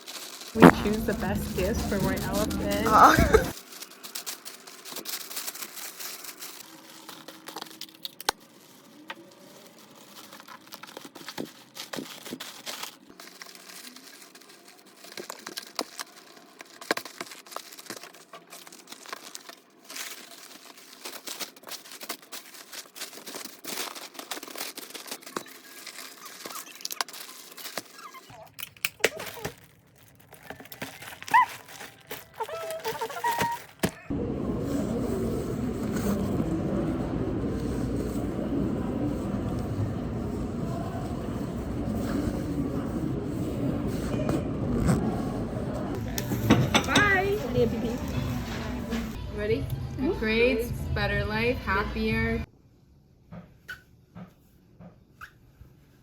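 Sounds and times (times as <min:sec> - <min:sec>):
paper tearing: 0:00.0 - 0:34.1
packaging crinkling and rustling: 0:00.0 - 0:36.5.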